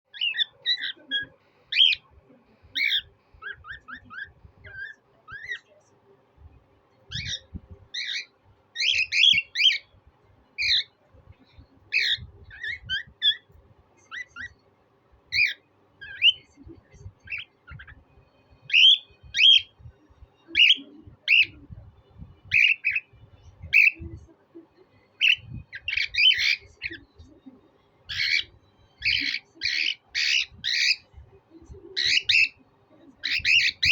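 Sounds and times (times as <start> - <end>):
cockatiel whistling and chirping: 2.8 - 5.6, 7.1 - 9.8, 11.9 - 13.5, 18.7 - 19.8, 22.5 - 23.1, 25.2 - 27.0, 28.1 - 31.0, 32.0 - 32.6, 33.2 - 33.9.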